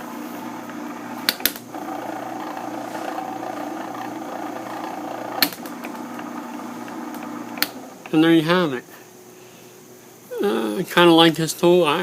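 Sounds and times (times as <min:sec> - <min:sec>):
electric motor humming: 0:00.3 - 0:08.6
sharp click: 0:01.2 - 0:01.7, 0:07.1 - 0:08.2.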